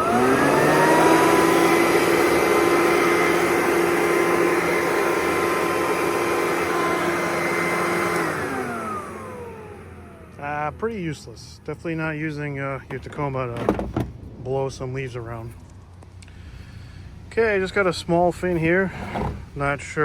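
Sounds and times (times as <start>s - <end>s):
electric leaf blower running: 0.0s - 10.7s.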